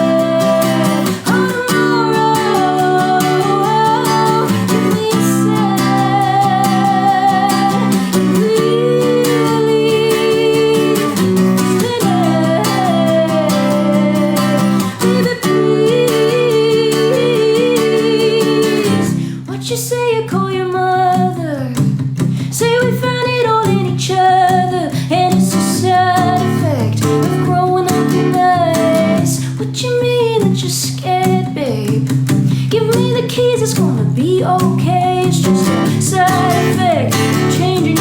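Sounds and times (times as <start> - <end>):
acoustic guitar strumming: 0.0 - 19.5, 30.8 - 38.0
woman singing: 0.0 - 38.0.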